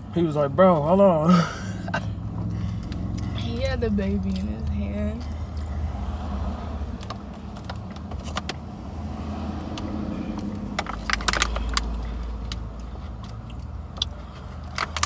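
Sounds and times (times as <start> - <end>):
car engine rumble: 0.0 - 15.0
sharp clicks and rattles: 7.0 - 8.6, 9.7 - 15.0.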